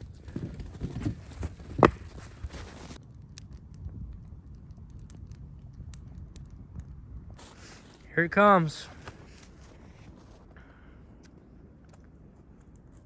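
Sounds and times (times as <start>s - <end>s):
footsteps in snow: 0.4s - 3.0s, 7.4s - 8.1s, 8.8s - 10.6s.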